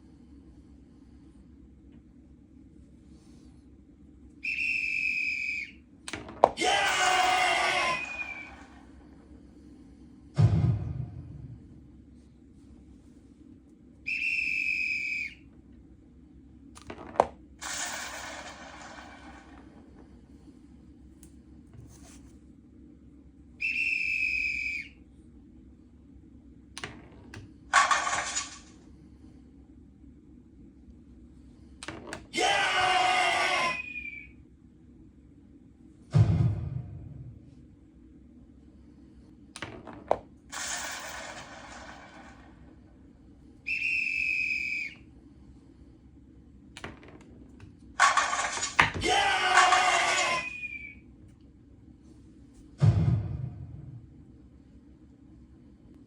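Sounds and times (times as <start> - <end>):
shrill whistle blow: 4.4 - 5.8, 6.8 - 8.6, 14.1 - 15.4, 23.6 - 25.0, 32.5 - 34.4, 43.6 - 45.1, 50.1 - 51.0
crowd cheering: 6.6 - 8.8, 32.4 - 34.0, 48.0 - 50.9
low thump: 10.4 - 11.8, 36.1 - 37.5, 52.8 - 54.2.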